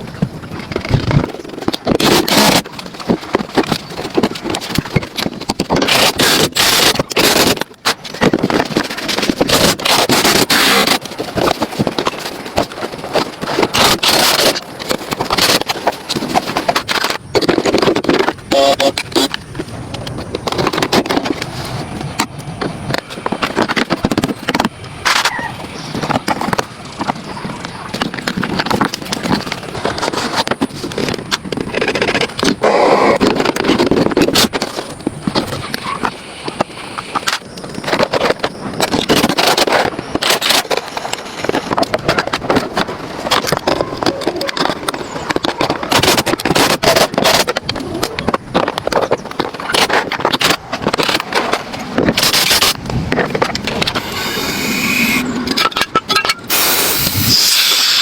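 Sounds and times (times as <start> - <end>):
short hiss: 56.5 - 58.0.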